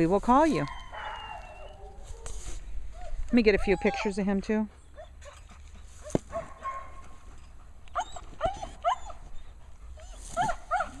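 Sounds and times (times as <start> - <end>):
dog whining in high yips: 0.7 - 2.4, 8.0 - 9.3, 10.0 - 11.0.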